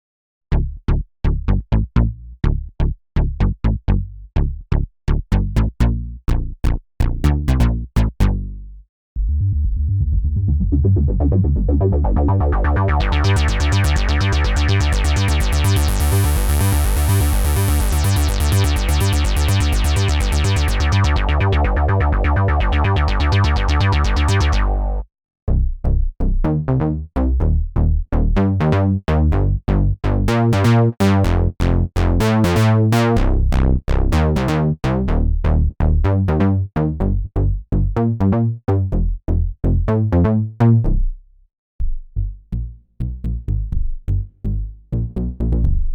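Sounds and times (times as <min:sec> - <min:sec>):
synthesizer bass line: 0:05.4 - 0:41.1, 0:42.6 - 0:45.8
choppy synthesizer notes: 0:10.6 - 0:25.0, 0:28.4 - 0:37.1, 0:37.9 - 0:40.8.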